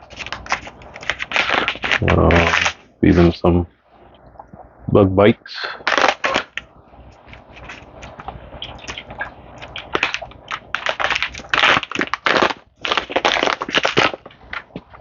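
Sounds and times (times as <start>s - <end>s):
fish food package rustling and rattling: 0.0s - 2.8s, 5.8s - 15.0s.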